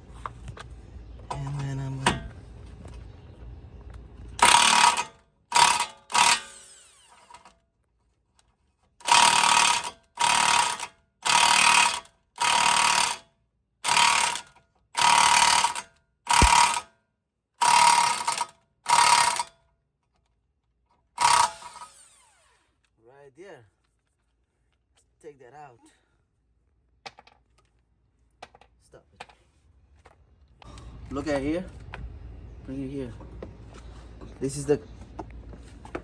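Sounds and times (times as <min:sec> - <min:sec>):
power tool motor whine: 0:04.4 - 0:07.5, 0:09.0 - 0:13.2, 0:15.0 - 0:16.8, 0:21.2 - 0:22.8.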